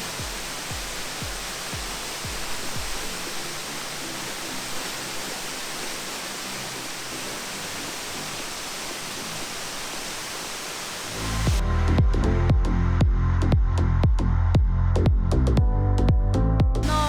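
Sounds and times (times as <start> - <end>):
waterfall rushing: 0.0 - 11.6
background music with bass: 11.2 - 17.0.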